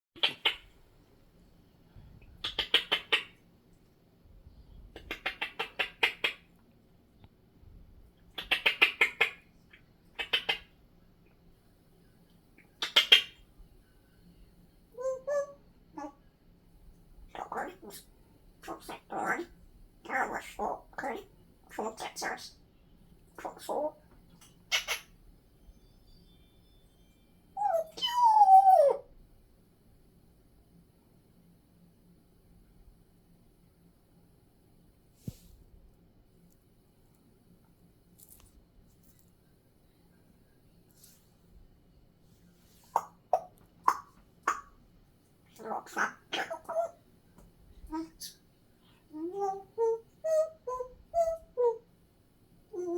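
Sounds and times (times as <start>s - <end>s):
parrot clicking calls: 0.2s - 0.6s, 2.4s - 3.4s, 5.0s - 6.5s, 8.4s - 9.4s, 10.2s - 10.7s, 12.8s - 13.4s
parrot whining calls: 15.0s - 16.2s, 27.6s - 29.1s, 45.6s - 47.0s, 49.1s - 51.8s.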